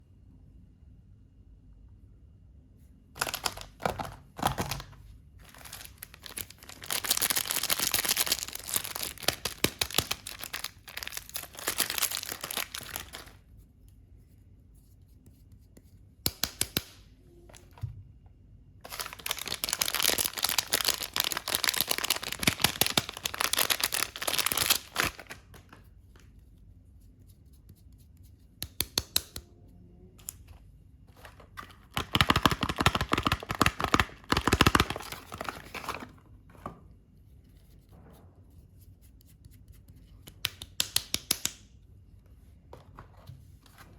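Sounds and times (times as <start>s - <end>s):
soap packaging tearing and crinkling: 3.2s - 13.4s, 18.8s - 25.6s, 31.2s - 36.2s.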